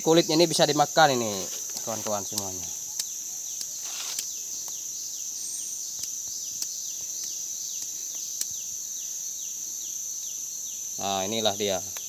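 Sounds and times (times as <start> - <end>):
insects droning: 0.0 - 12.0
faint sharp clicks: 1.7 - 4.8, 5.9 - 8.6.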